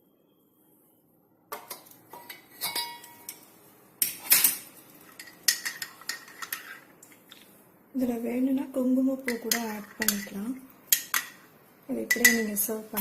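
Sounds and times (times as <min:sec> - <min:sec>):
spoon clinking in a cup: 0:02.2 - 0:03.4, 0:09.3 - 0:11.4, 0:12.1 - 0:12.5.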